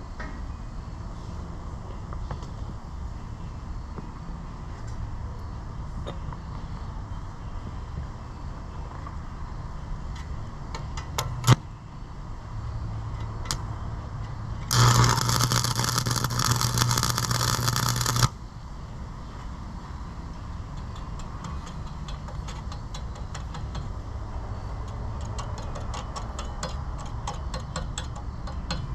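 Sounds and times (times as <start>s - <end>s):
welder arc crackling: 14.6s - 18.4s.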